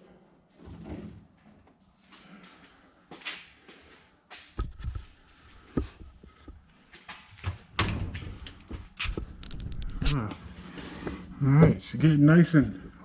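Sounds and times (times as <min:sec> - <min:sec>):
handling knocks clicks and scrapes: 0:04.6 - 0:06.7, 0:07.5 - 0:10.2.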